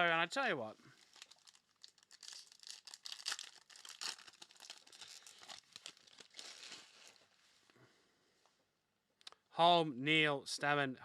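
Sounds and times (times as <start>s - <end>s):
wrapper tearing and crinkling: 1.0s - 7.4s.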